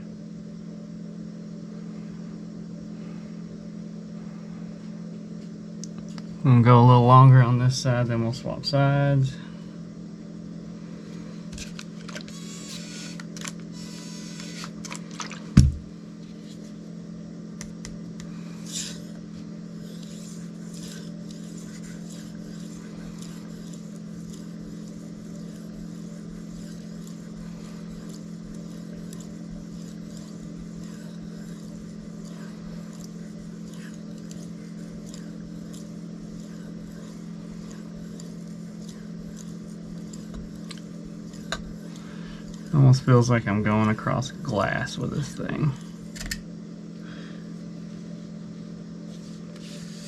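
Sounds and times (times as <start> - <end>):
low hum: 0.0 - 50.0
knife blade scraping on whetstone: 12.3 - 14.8
dull thump: 15.6 - 15.9.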